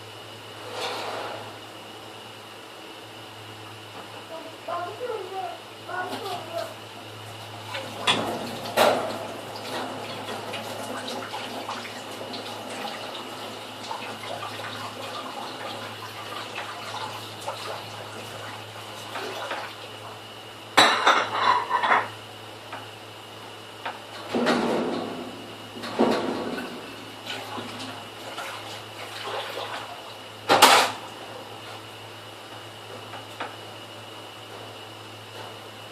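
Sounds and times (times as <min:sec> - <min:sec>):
running water in a sink: 0:04.7 - 0:20.2, 0:24.2 - 0:31.2
dishes clattering: 0:20.8 - 0:22.1.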